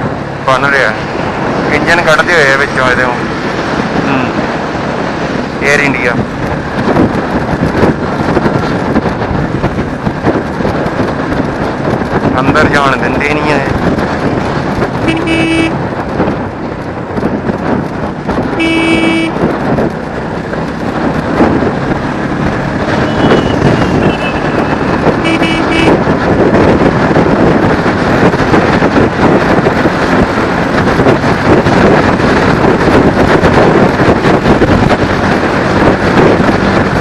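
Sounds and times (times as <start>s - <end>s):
road traffic: 0.0s - 37.0s
wind noise on microphone: 0.0s - 37.0s
vehicle horn honking: 15.0s - 15.8s, 18.6s - 19.4s, 23.0s - 26.0s.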